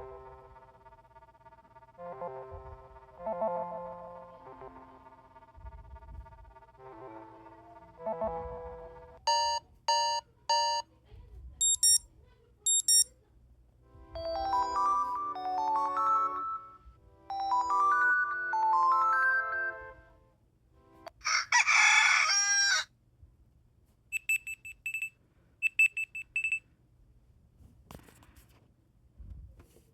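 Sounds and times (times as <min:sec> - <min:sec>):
rapid high beeps: 0:11.6 - 0:12.0, 0:12.7 - 0:13.1
short electronic beeps: 0:11.6 - 0:12.0, 0:12.7 - 0:13.1, 0:24.1 - 0:26.6
rising melodic notes: 0:14.2 - 0:20.1
rooster crowing: 0:21.2 - 0:22.9.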